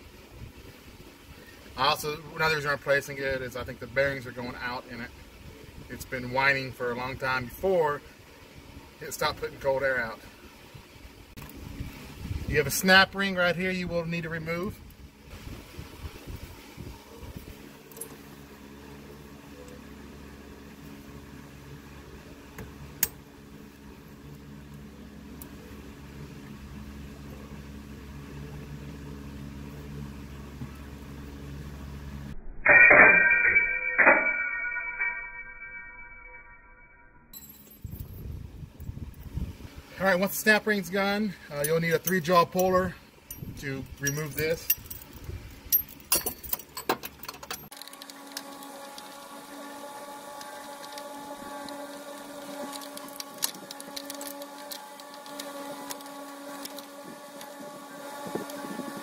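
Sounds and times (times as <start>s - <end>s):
low mechanical hum: 0.0s - 32.6s, 37.2s - 59.0s
metal tools clinking: 37.3s - 38.2s, 41.5s - 49.2s, 50.6s - 57.6s.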